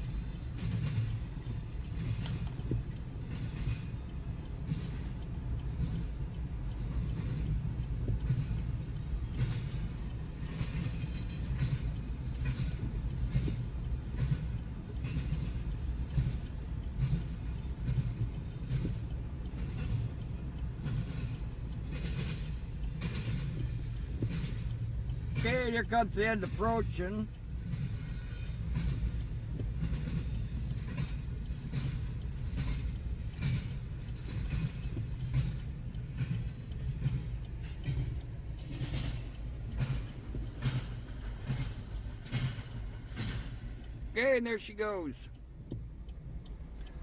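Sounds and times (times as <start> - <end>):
wheels clacking over rail joints: 0.0 - 44.1
freight train rumbling past: 0.0 - 47.0.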